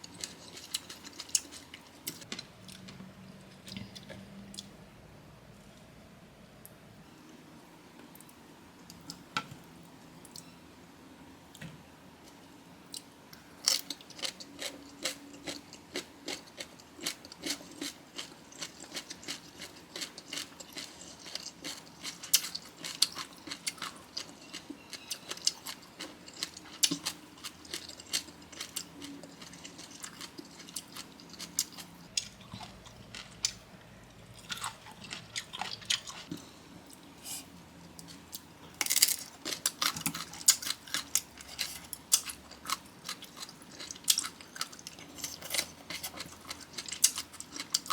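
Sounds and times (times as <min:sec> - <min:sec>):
chewing and crunching: 0:13.7 - 0:33.6, 0:34.3 - 0:37.0, 0:37.9 - 0:47.9.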